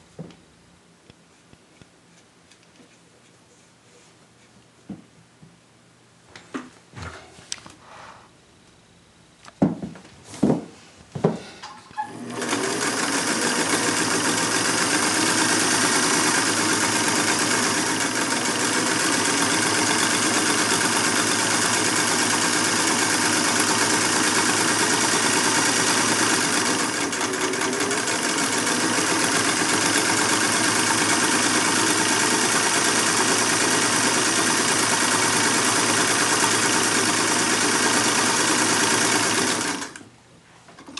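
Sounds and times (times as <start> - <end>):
sewing machine running: 12.1 - 40.0.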